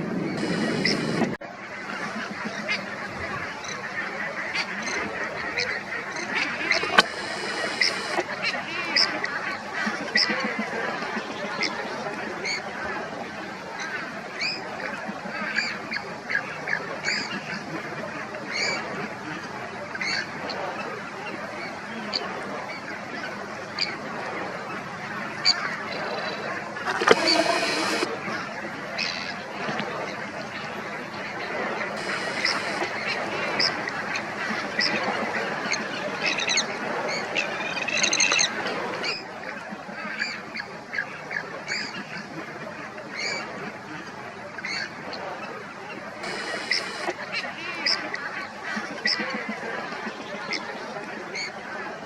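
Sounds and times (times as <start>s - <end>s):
steady rushing noise: 0.0s - 2.3s, 6.0s - 8.4s, 26.8s - 28.2s, 32.0s - 37.1s, 46.2s - 47.2s
ducks and geese quacking and honking: 0.0s - 52.0s
sharp high bird calls: 6.2s - 8.2s, 32.0s - 35.0s, 46.2s - 47.2s.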